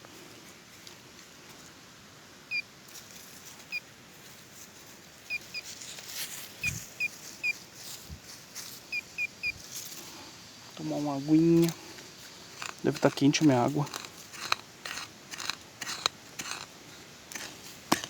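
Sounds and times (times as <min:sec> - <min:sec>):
small bird chirping: 0:05.3 - 0:05.7, 0:06.6 - 0:07.6, 0:08.9 - 0:09.6.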